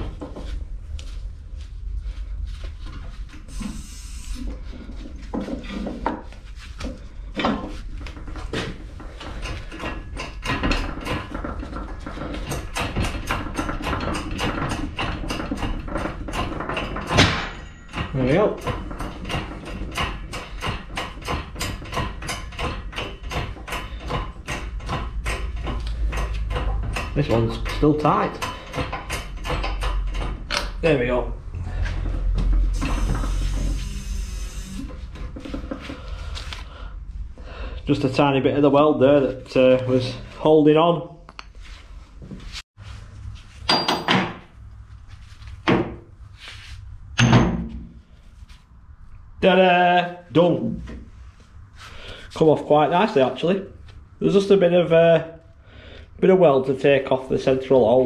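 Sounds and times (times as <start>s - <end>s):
heavy metal knocks: 7.4s - 30.8s.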